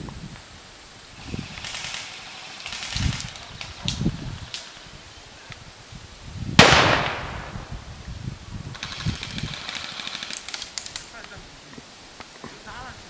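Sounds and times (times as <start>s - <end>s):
loud bang with hissing tail: 6.6s - 8.1s
faint rapid ticking: 8.7s - 11.1s.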